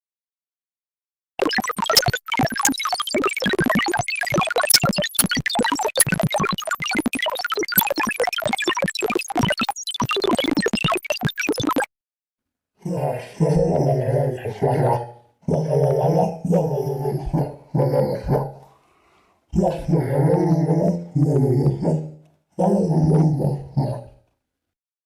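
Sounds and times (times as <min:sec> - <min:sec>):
electronic clicks: 0:01.4 - 0:11.9
electronic robot beeps and chirps: 0:01.4 - 0:11.9.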